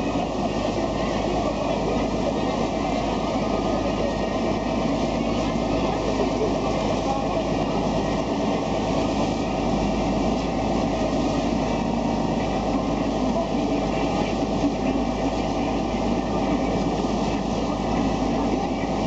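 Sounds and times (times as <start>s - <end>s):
boat engine running: 0.0s - 19.0s.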